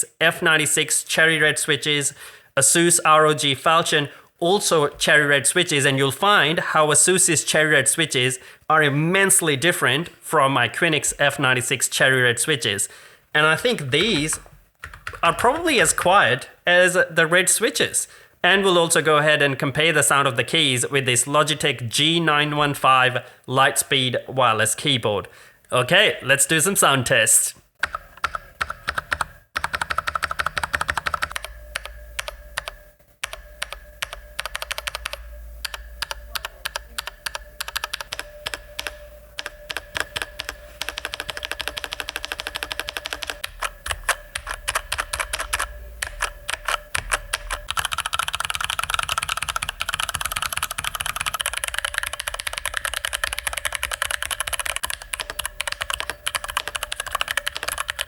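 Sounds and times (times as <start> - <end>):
mechanical keyboard typing: 14.0 - 16.0, 27.8 - 58.0.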